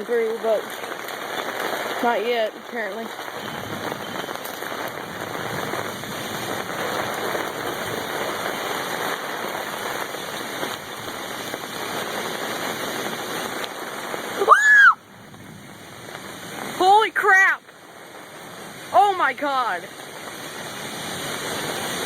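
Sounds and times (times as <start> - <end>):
torrential rain: 0.0 - 22.0.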